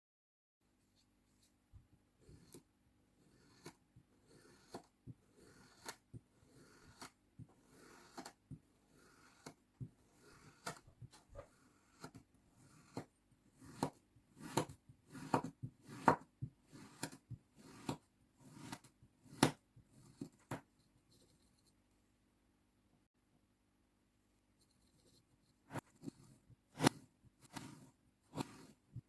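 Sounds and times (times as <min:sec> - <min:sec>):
knife slicing sand: 0:03.3 - 0:09.6, 0:11.8 - 0:20.3, 0:25.7 - 0:28.8.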